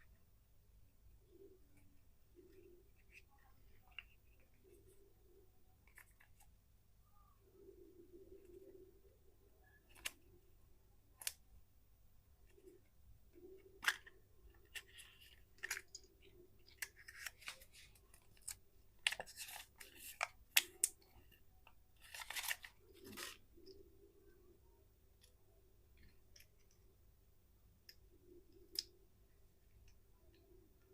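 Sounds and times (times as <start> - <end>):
wrapper crinkling and tearing: 22.0 - 23.4.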